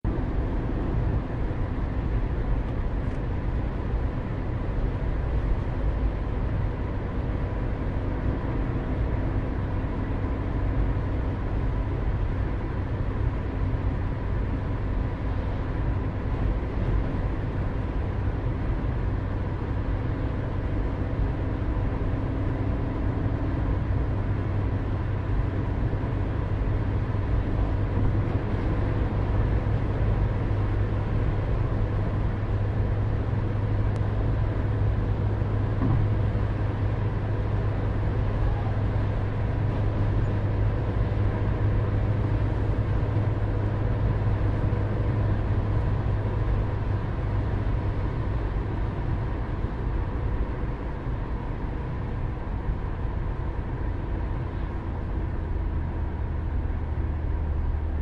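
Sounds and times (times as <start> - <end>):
car engine and road rumble: 0.0 - 58.0.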